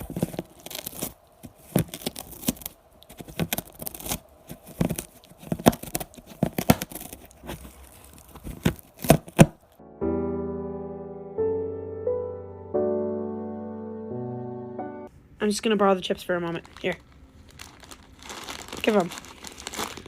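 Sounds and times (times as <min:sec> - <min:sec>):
crinkling and tearing: 0:00.0 - 0:09.8, 0:16.5 - 0:20.0.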